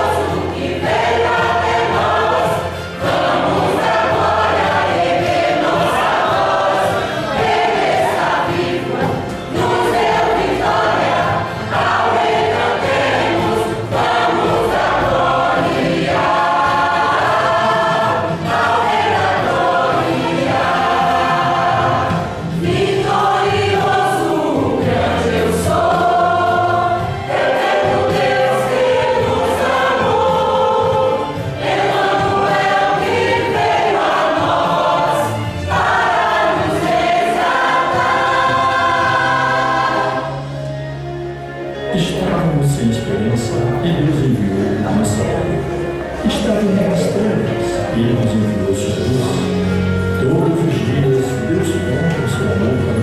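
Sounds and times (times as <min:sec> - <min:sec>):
choir singing gospel: 0:00.0 - 0:53.0
instrumental accompaniment: 0:00.0 - 0:53.0.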